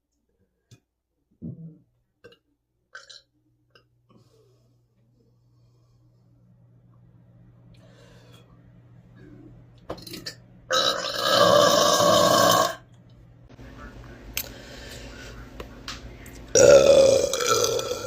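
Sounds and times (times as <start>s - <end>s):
woman burping loudly: 10.0s - 12.8s, 16.6s - 18.0s.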